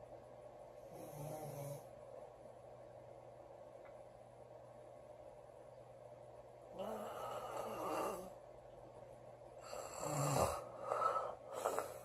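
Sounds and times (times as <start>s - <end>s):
woman snoring: 0.9s - 1.9s, 6.7s - 8.4s, 9.6s - 12.0s.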